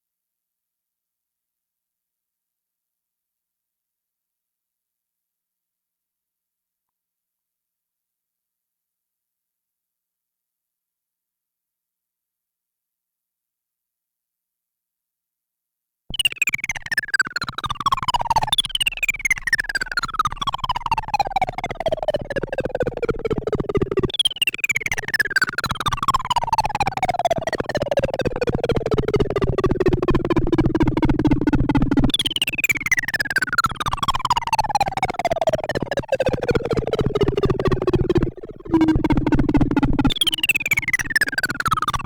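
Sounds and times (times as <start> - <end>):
buzzy synthesizer tone sliding down: 36.4 - 42.0
steady low synth drone: 36.5 - 41.2.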